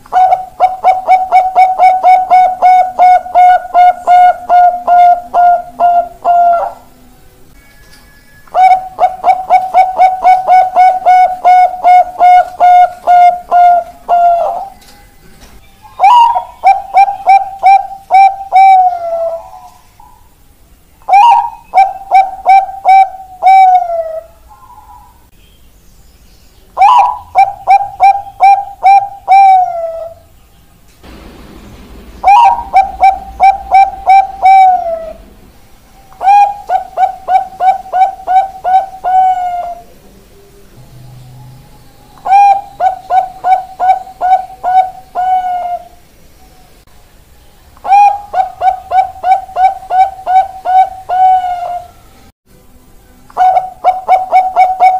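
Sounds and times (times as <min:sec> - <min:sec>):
dove cooing song: 0:00.0 - 0:07.2, 0:08.4 - 0:20.4, 0:21.0 - 0:25.3, 0:26.8 - 0:30.4, 0:32.2 - 0:35.4, 0:36.0 - 0:40.0, 0:40.8 - 0:46.6, 0:47.8 - 0:52.3, 0:53.3 - 0:54.9.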